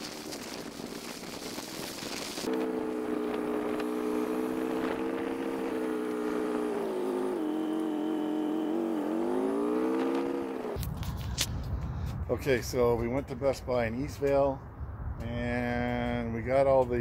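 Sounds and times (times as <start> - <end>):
motorcycle engine running: 0.0 - 11.3.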